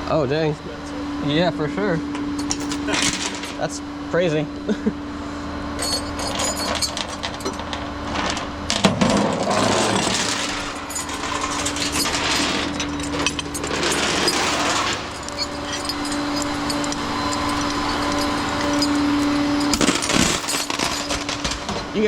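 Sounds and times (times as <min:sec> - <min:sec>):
winch mechanical hum: 0:00.0 - 0:22.0
chains clinking and rattling: 0:02.4 - 0:03.6, 0:05.8 - 0:21.7.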